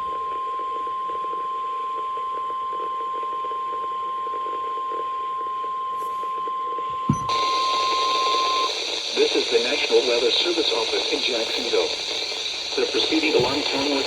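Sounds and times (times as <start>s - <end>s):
steady warning alarm tone: 6.9s - 9.2s, 10.4s - 14.0s
faint radio hiss: 7.0s - 14.0s.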